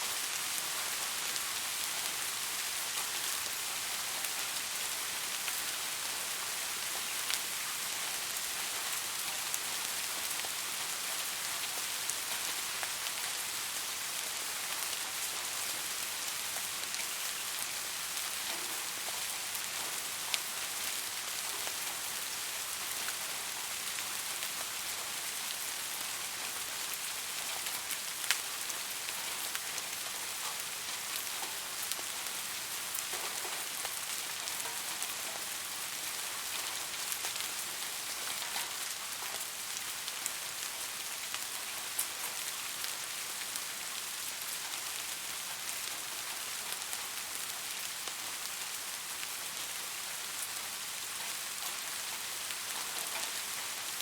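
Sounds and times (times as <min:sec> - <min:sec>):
steady rain falling: 0:00.0 - 0:54.0
raindrops ticking on a surface: 0:00.2 - 0:54.0.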